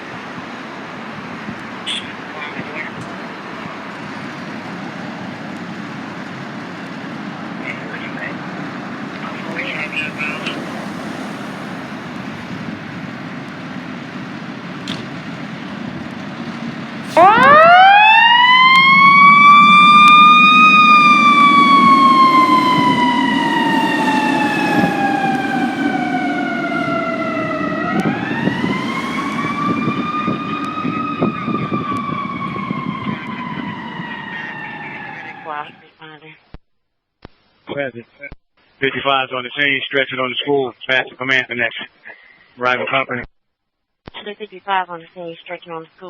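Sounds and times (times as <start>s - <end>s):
fire truck siren wailing: 0.0s - 35.8s
low engine rumble: 0.2s - 35.6s.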